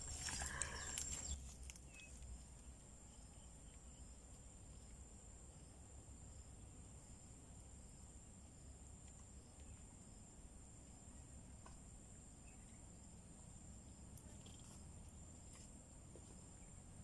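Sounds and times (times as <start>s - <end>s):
insects trilling: 0.0s - 2.4s.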